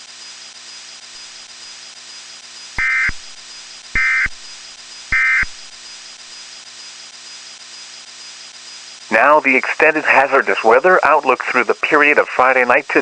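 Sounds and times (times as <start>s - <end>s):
electronic data bursts: 2.8s - 6.2s
radio hiss: 9.0s - 13.0s.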